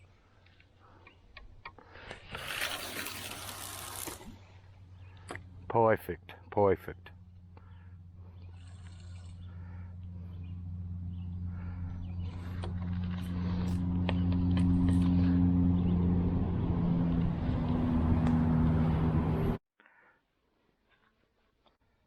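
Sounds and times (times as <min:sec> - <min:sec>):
vehicle engine hum: 0:02.8 - 0:19.6.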